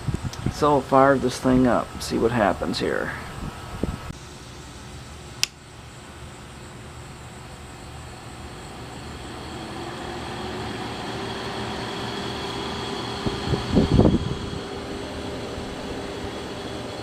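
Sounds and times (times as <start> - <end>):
air conditioner fan hum: 0.0 - 17.0.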